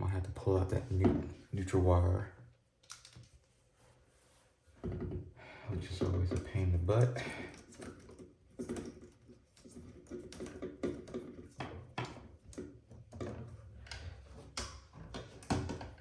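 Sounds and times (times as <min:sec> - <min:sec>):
electrical wires being handled: 0:05.8 - 0:16.0.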